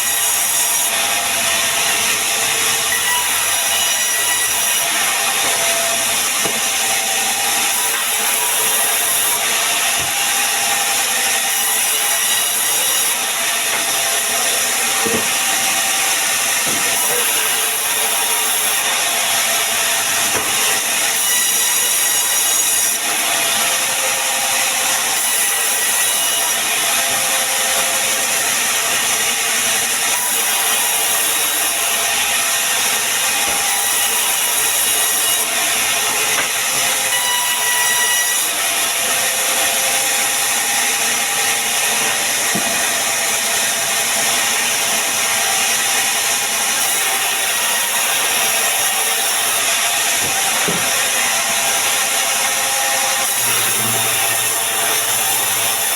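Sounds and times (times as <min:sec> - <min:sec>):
saw blade rasping through wood: 0:00.0 - 0:55.9.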